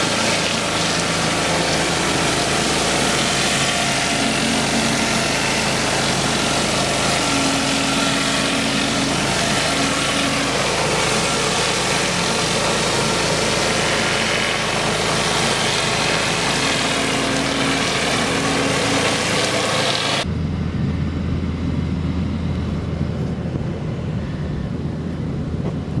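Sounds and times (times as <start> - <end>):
water spray hissing: 0.0 - 20.2
pressure washer engine running: 0.0 - 20.3.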